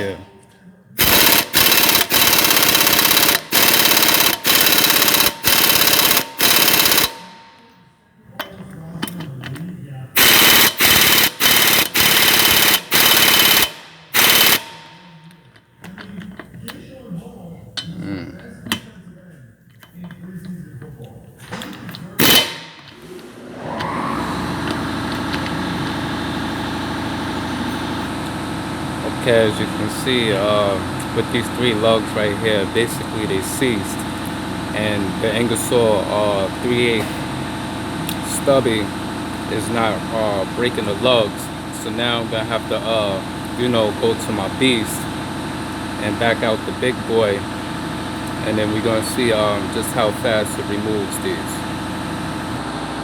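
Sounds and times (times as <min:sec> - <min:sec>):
pneumatic impact wrench hammering: 0:01.0 - 0:07.7, 0:10.2 - 0:15.4, 0:21.6 - 0:23.1, 0:29.2 - 0:52.6.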